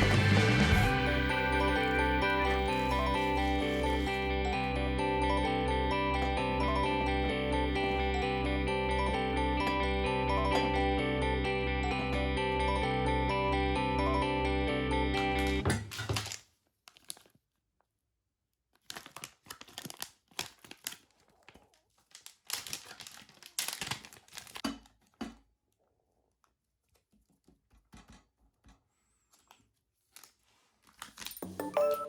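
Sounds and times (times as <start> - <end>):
packaging crinkling and tearing: 15.9 - 17.6, 18.8 - 25.2, 29.6 - 31.6.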